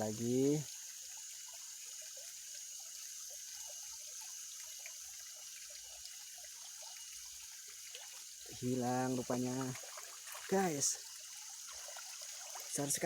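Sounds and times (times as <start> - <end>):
water trickling and dripping: 0.0 - 13.0.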